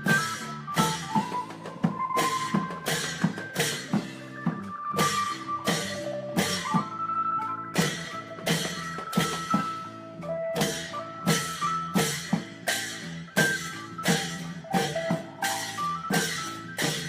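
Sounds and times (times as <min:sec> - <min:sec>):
long-drum ensemble playing: 0:00.0 - 0:07.0, 0:07.7 - 0:17.0
held melodic notes: 0:00.0 - 0:17.0.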